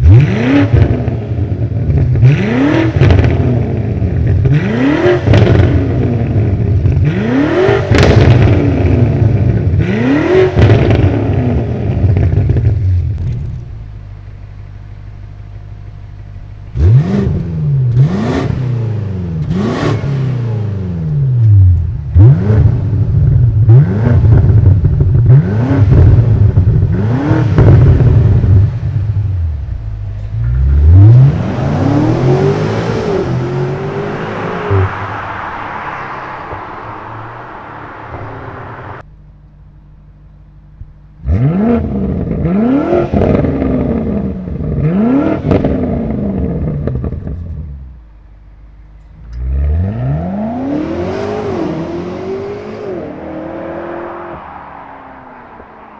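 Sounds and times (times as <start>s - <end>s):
car engine revving in blips: 0.0s - 14.0s, 16.6s - 39.0s
car engine idling: 28.2s - 39.0s.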